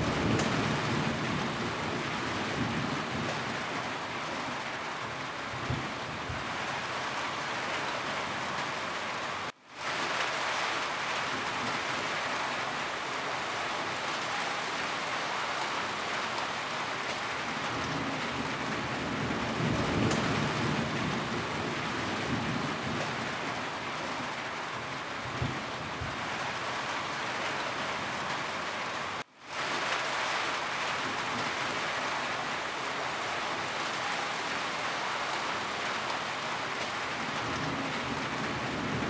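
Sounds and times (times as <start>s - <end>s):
low rumble of thunder: 0.0s - 3.9s, 17.5s - 23.7s, 25.2s - 26.3s, 37.3s - 39.0s
heavy rain on a roof: 0.0s - 39.0s.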